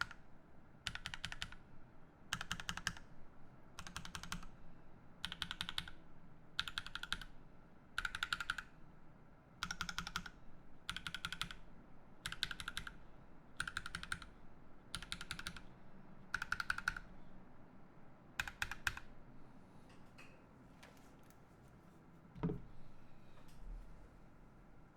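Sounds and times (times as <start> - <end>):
mechanical keyboard typing: 0.8 - 1.6, 2.3 - 3.1, 3.8 - 4.5, 5.2 - 6.0, 6.6 - 7.3, 8.0 - 8.7, 9.6 - 11.6, 12.2 - 13.0, 13.6 - 14.3, 14.9 - 15.7, 16.3 - 17.1, 18.4 - 19.1.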